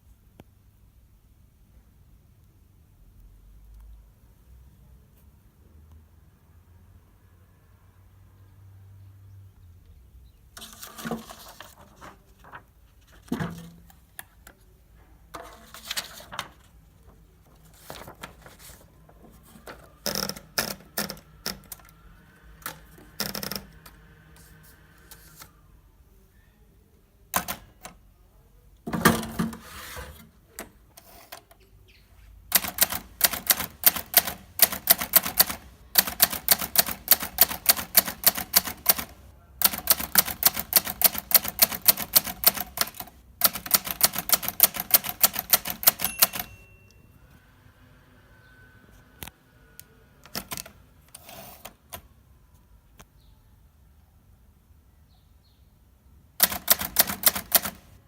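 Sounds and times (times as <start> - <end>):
fast typewriter typing: 19.4 - 22.0, 22.6 - 24.0, 27.4 - 28.0, 32.5 - 46.6, 50.2 - 52.0, 56.4 - 58.0
typewriter mechanism clicks and clunks: 20.0 - 22.0, 22.6 - 24.0, 27.4 - 28.0, 32.5 - 46.7, 50.2 - 52.0, 56.4 - 57.9.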